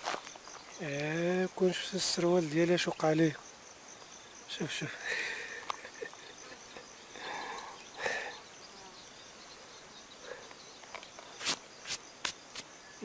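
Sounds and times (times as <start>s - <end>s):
insects chirring: 0.0s - 13.0s.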